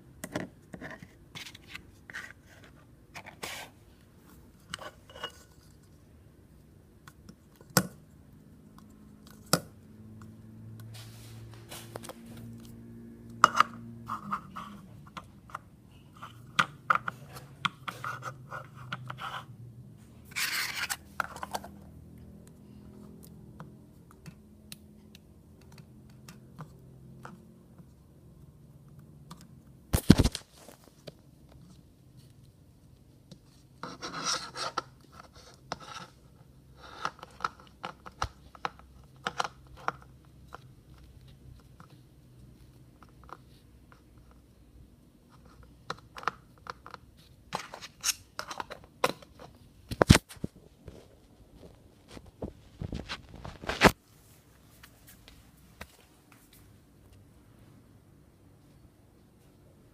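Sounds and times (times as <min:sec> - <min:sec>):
hands scratching and clicking containers: 0:20.3 - 0:22.5.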